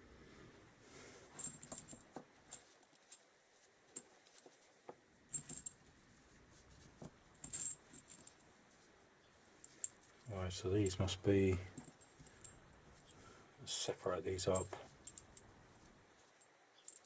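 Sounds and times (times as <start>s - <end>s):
small metal parts clinking: 5.3s - 5.8s, 7.3s - 8.4s, 14.4s - 15.5s.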